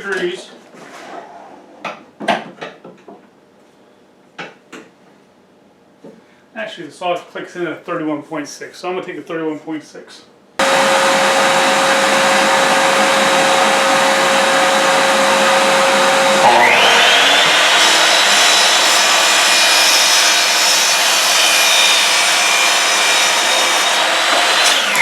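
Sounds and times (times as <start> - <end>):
machine hum: 10.6 - 23.3
miter saw cutting pipe: 10.6 - 25.0.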